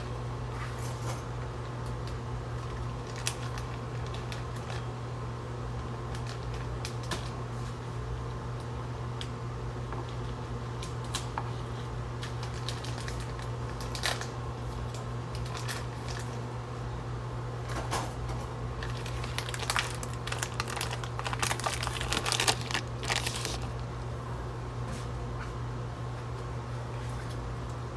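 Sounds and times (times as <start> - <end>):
clicks and crinkling handling: 18.8 - 24.1.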